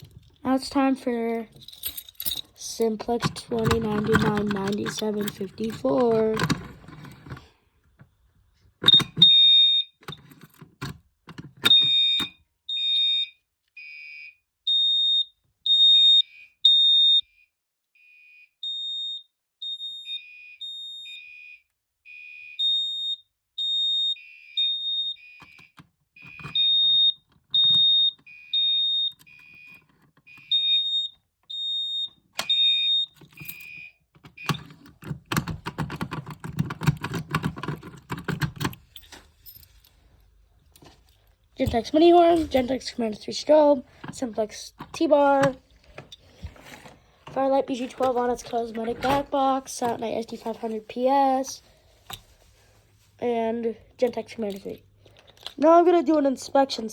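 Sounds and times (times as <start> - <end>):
handling noise: 1.5 - 7.4, 33.2 - 51.2.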